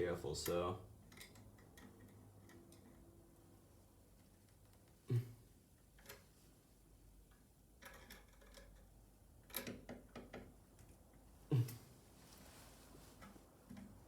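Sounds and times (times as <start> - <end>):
small clicks and light knocks: 0.4 - 3.1, 4.1 - 5.0, 5.8 - 6.4, 7.2 - 11.3, 13.1 - 14.0.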